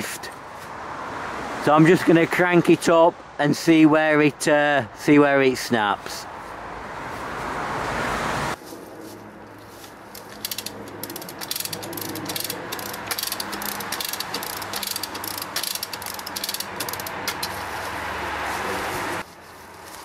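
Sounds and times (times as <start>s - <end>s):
lever hoist ratchet clicking: 10.2s - 17.6s.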